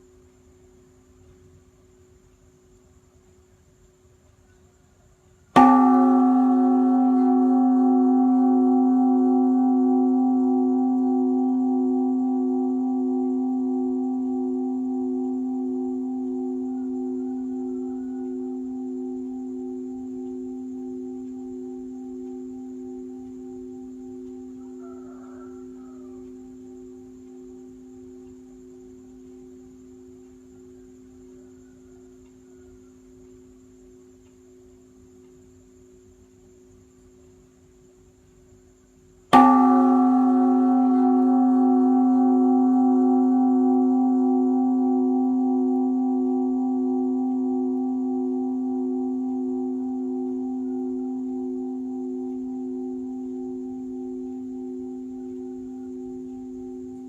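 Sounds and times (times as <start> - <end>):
large bronze bell ringing: 5.6 - 31.6, 39.3 - 57.0.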